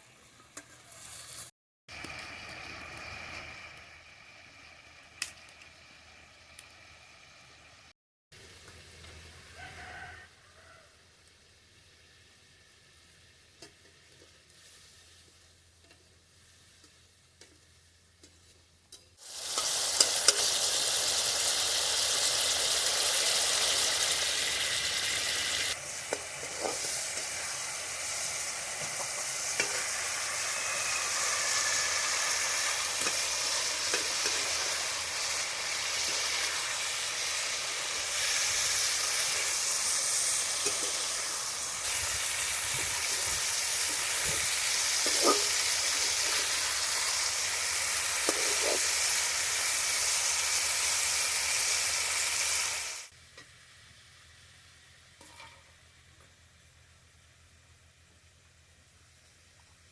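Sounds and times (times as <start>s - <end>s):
food sizzling in hot oil: 0.0s - 56.2s.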